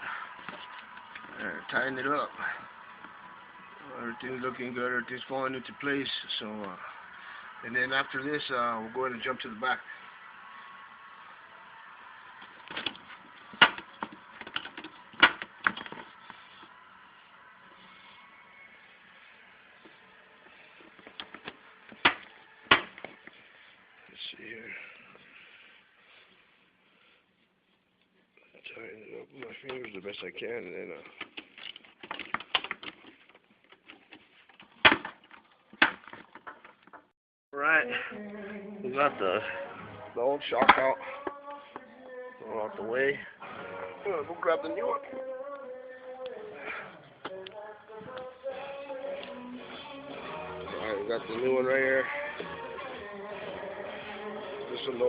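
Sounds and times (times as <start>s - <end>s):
faint background noise: 0.0s - 55.0s.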